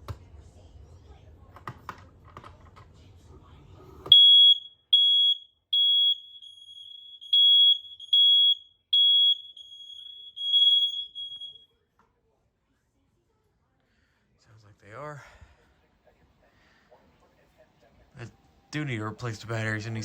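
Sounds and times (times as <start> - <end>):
fainter distant alarms beeping: 4.1 - 11.7
smoke alarm beeping: 4.1 - 11.7.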